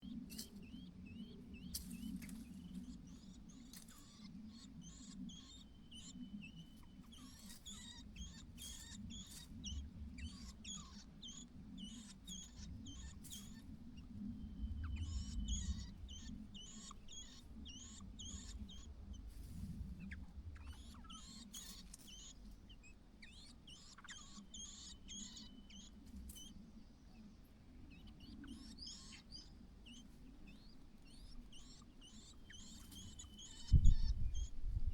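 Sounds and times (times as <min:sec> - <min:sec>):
faint low rumble: 0:00.0 - 0:34.9
birds chirping and whistling: 0:28.0 - 0:34.6.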